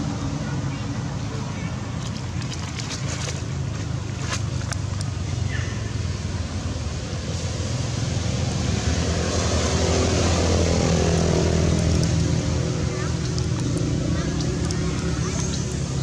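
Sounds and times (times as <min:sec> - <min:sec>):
vehicle engine humming: 0:00.0 - 0:16.0
sharp clicks: 0:13.1 - 0:15.7.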